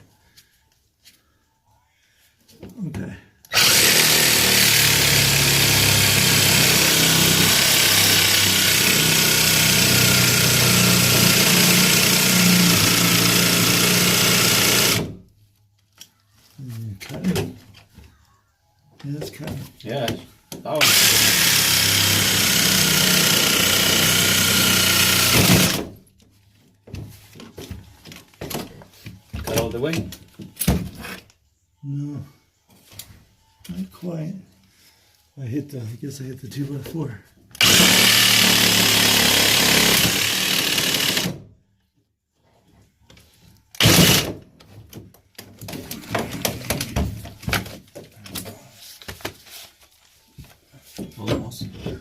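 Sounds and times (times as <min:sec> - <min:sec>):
power saw cutting iron pipe: 0:20.8 - 0:25.8
clatter of handling pipe and tools: 0:44.6 - 0:52.0.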